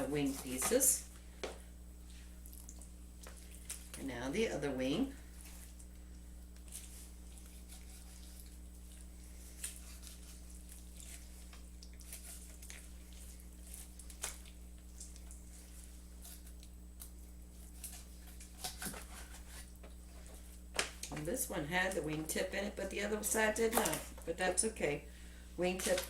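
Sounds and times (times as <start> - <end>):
low electrical hum: 0.0 - 26.0
wet squishing of cut chicken: 2.1 - 4.0, 5.3 - 19.0.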